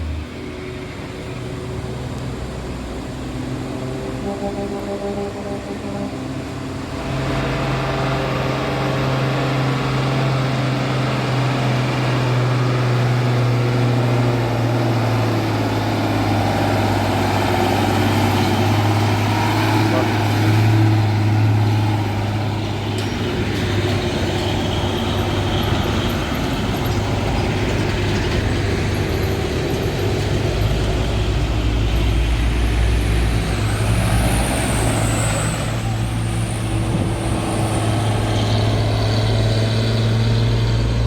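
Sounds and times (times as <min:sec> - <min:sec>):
heavy trucks passing: 0:00.0 - 0:41.0.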